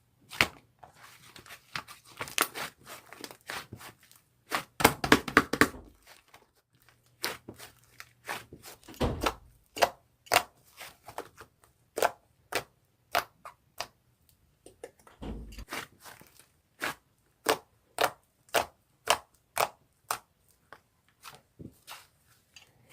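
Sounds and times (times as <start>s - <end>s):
heavy thump: 15.2s - 15.6s.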